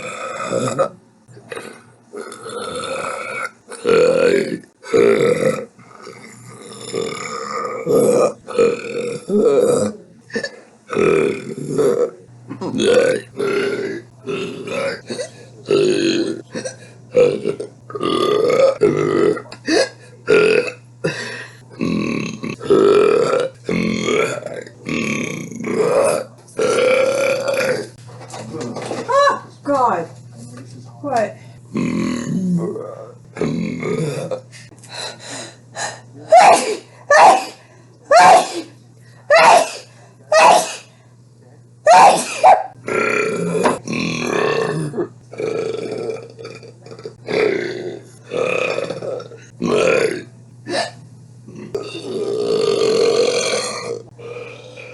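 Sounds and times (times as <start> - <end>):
person burping loudly: 0.0 - 28.0, 31.7 - 34.5, 42.2 - 54.9
woman's explosive vocal bursts: 35.8 - 40.9.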